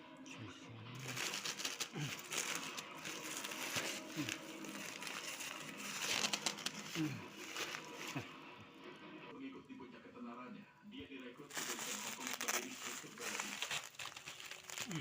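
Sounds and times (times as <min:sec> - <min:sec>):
packaging crinkling: 0:01.0 - 0:08.3, 0:11.5 - 0:15.0.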